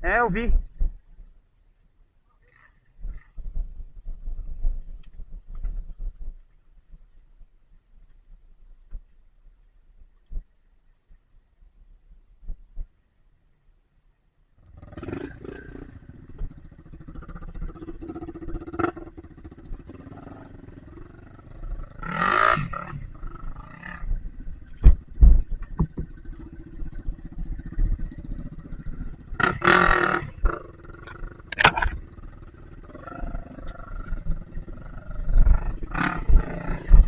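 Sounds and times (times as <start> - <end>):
motorcycle engine revving: 14.6 - 37.0.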